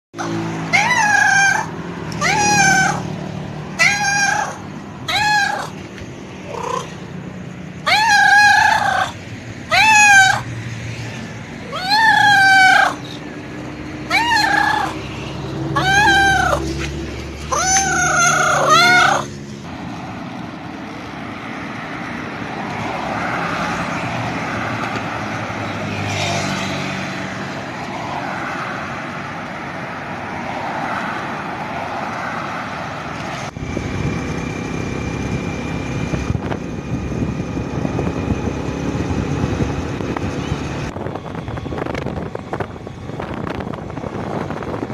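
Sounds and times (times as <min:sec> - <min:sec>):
cat meowing: 0:00.2 - 0:03.1, 0:03.8 - 0:05.8, 0:07.8 - 0:10.5, 0:14.1 - 0:15.0, 0:15.8 - 0:16.7, 0:17.5 - 0:19.3
steady mechanical drone: 0:33.5 - 0:44.9.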